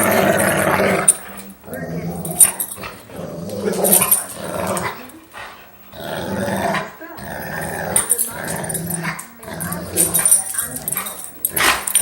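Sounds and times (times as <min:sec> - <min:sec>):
dogs growling in play: 0:00.0 - 0:12.0.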